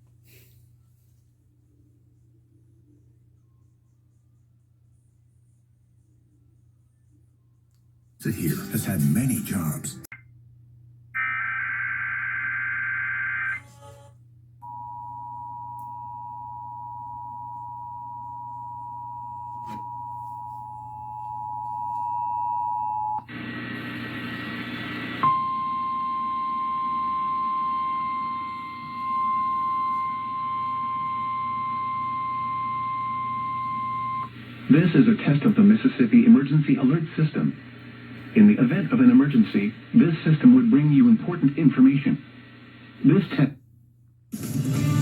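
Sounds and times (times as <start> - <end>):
steady alarm tone: 11.2 - 23.2, 25.2 - 34.4
broadcast hiss: 23.3 - 25.2, 34.2 - 43.6
two-tone attention signal: 25.2 - 34.3
noisy radio audio burst: 34.0 - 43.6.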